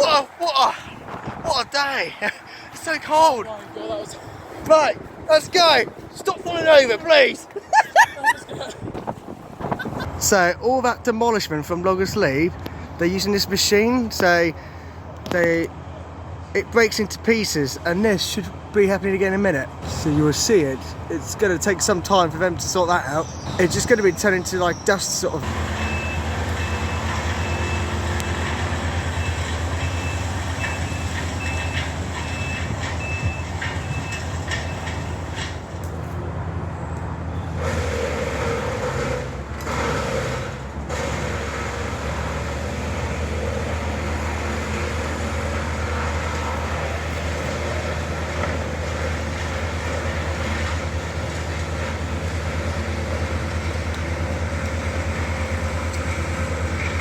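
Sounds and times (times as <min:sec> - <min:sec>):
demolition machinery engine hum: 0:11.0 - 0:57.0
reversing alarm beeping: 0:24.1 - 0:35.2.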